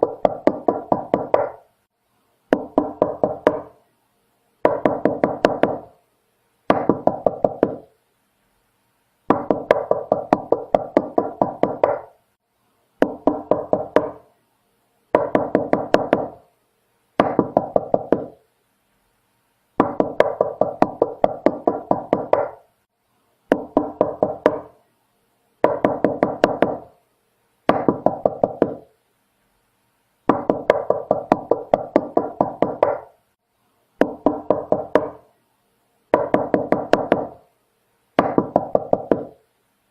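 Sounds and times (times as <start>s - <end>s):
knocking on a door: 0.0s - 1.5s, 2.5s - 3.7s, 4.6s - 5.9s, 6.7s - 7.8s, 9.3s - 12.1s, 13.0s - 14.2s, 15.2s - 16.4s, 17.2s - 18.4s, 19.8s - 22.6s, 23.5s - 24.7s, 25.6s - 26.9s, 27.7s - 28.8s, 30.3s - 33.1s, 34.0s - 35.2s, 36.2s - 37.4s, 38.2s - 39.4s.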